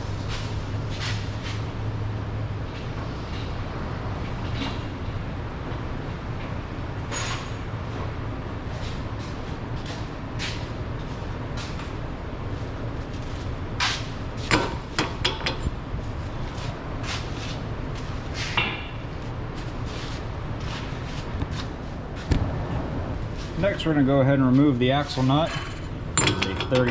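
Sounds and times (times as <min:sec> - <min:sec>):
metal tools clinking: 0:25.2 - 0:26.9.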